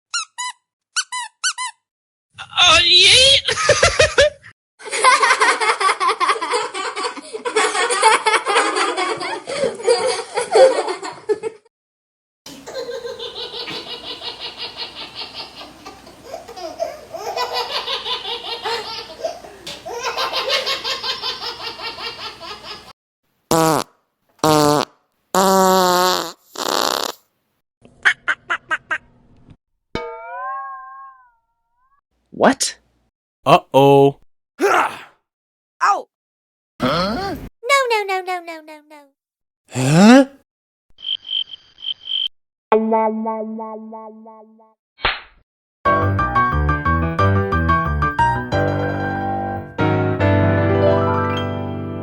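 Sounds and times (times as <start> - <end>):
laughter: 3.2 - 11.7, 12.6 - 16.1.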